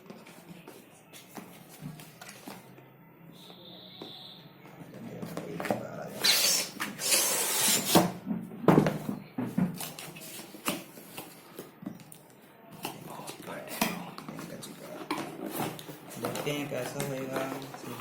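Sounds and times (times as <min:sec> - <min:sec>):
cardboard box rustling: 0:12.8 - 0:18.0.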